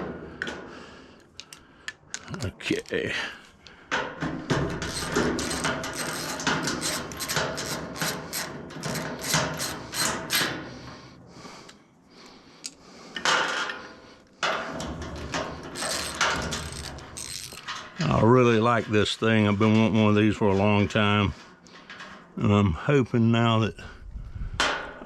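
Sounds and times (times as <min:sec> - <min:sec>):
hand tool scraping strokes: 0:04.6 - 0:11.0, 0:15.5 - 0:17.7.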